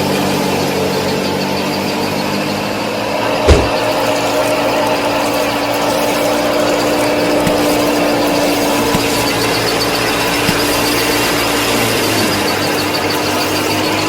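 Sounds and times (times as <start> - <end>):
sharp knock: 7.4 - 9.6, 10.3 - 11.0.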